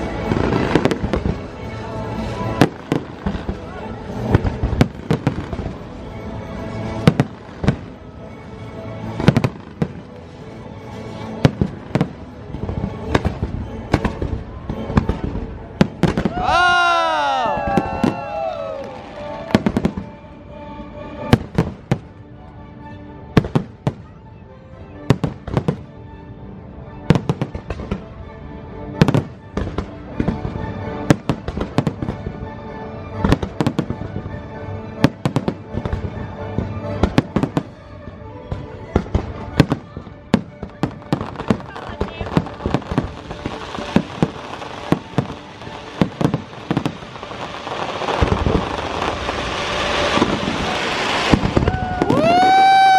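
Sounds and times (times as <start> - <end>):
fireworks bursting with sharp bangs: 0.0 - 20.3, 21.2 - 22.2, 25.1 - 25.9, 29.0 - 32.4, 33.2 - 52.9
show music: 0.0 - 22.1
music soundtrack: 0.0 - 52.9.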